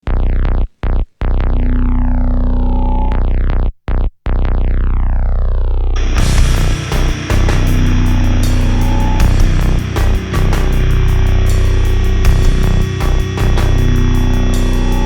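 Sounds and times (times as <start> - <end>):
droning synthesizer sweeping down: 4.8 - 15.0
heavy metal band: 6.0 - 15.0.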